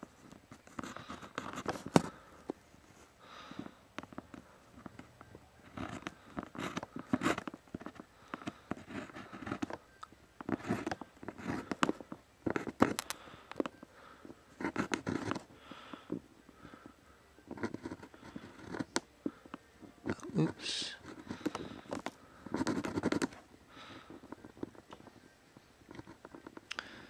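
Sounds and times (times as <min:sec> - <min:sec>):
pencil scratching on paper: 0:00.0 - 0:02.2, 0:05.0 - 0:09.7, 0:10.5 - 0:13.0, 0:14.5 - 0:15.5, 0:17.5 - 0:18.9, 0:20.1 - 0:23.4.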